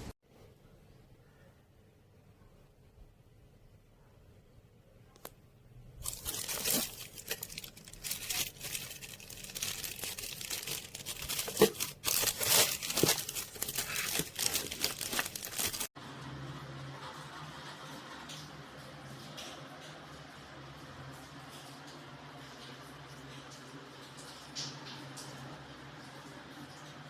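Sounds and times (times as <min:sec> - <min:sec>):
packaging crinkling and tearing: 0:06.0 - 0:16.0.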